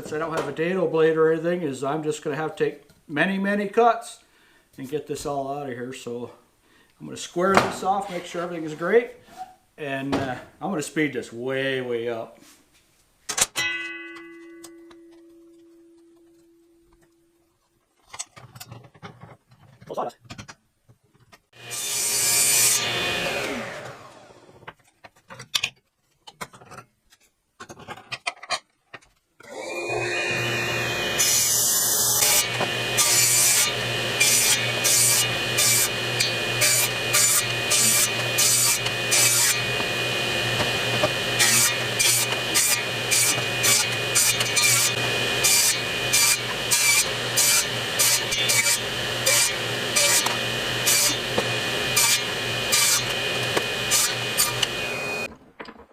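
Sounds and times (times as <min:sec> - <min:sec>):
power saw cutting lumber: 0:21.6 - 0:24.6, 0:29.4 - 0:55.3.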